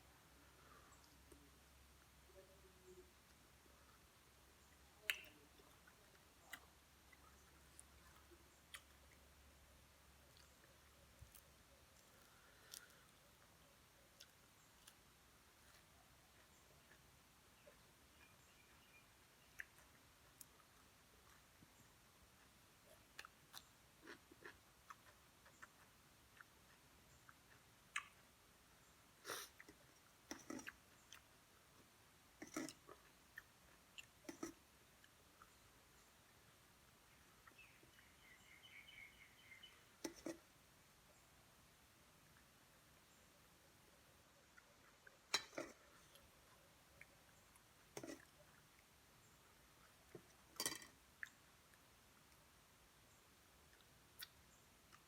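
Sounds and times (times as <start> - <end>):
person chewing food: 10.2 - 21.6, 22.3 - 28.3, 29.2 - 35.6, 44.4 - 48.9
small mouth clicks: 22.9 - 28.3, 53.7 - 55.0.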